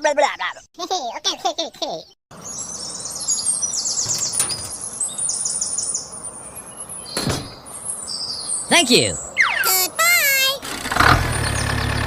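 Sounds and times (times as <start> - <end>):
outdoor background noise: 0.0 - 12.0
songbird chirping: 2.3 - 10.6.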